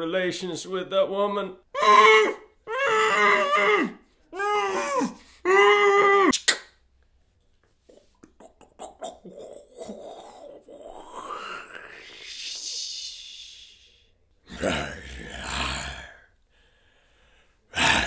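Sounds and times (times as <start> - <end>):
man making wordless vocal sounds: 8.0 - 16.3, 17.7 - 18.0.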